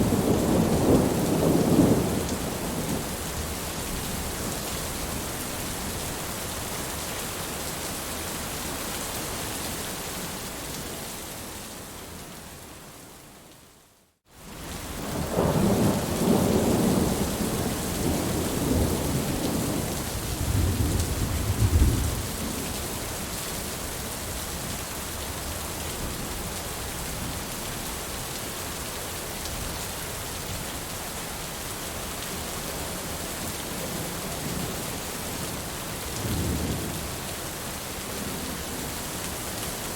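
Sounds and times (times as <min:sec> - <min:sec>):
heavy rain: 0:00.0 - 0:39.9
rolling thunder: 0:15.1 - 0:22.6.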